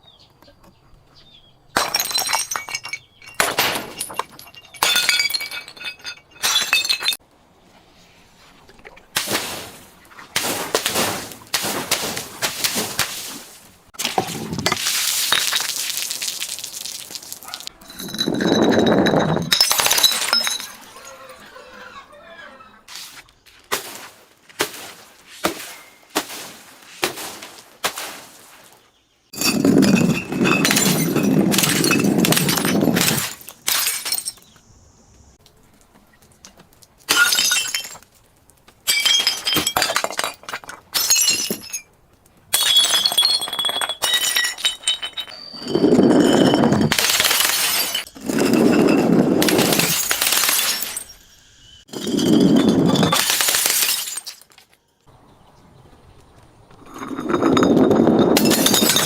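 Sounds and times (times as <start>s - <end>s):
broken glass crunching and grinding: 1.8s - 7.2s, 10.4s - 21.5s, 23.7s - 28.6s, 29.3s - 34.6s, 36.2s - 54.9s, 56.8s - 59.0s
glass smashing with sharp cracks: 1.8s - 7.2s, 10.4s - 21.3s, 23.7s - 28.6s, 29.4s - 34.6s, 37.0s - 41.9s, 42.5s - 54.7s, 57.5s - 59.0s.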